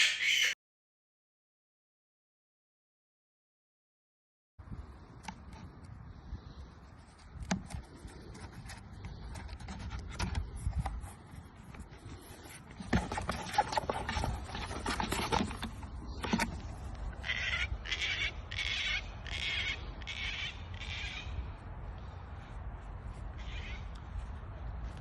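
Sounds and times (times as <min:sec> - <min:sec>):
rustling and scraping: 0:05.0 - 0:17.6.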